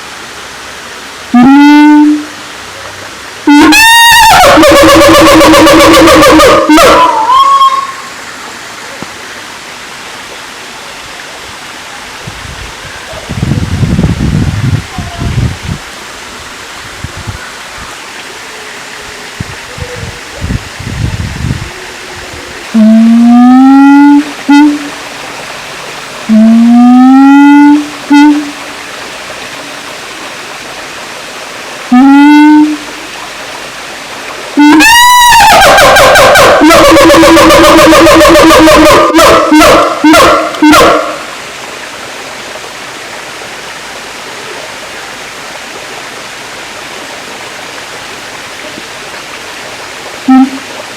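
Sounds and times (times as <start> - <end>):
background hiss: 0.0 - 35.4, 36.4 - 50.9
siamang hooting: 1.3 - 8.2, 21.7 - 25.1, 26.2 - 28.7, 31.9 - 33.2, 34.6 - 41.4, 50.2 - 50.8.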